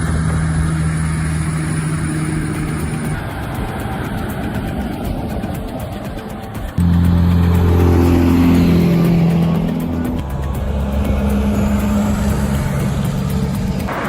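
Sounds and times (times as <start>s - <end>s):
heavy truck droning: 6.8s - 14.0s.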